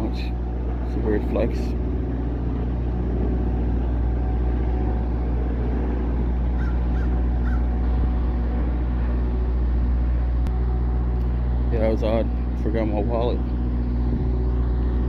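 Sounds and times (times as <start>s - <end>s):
car engine running: 0.0s - 15.0s
crow cawing: 6.6s - 7.7s.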